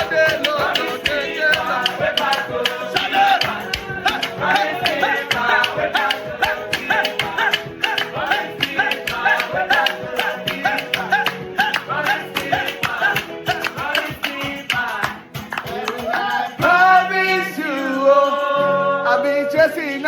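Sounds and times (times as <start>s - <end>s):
person singing long notes: 0.0s - 15.1s
plucked guitar riff: 0.0s - 17.6s
gospel band playing: 0.0s - 17.7s.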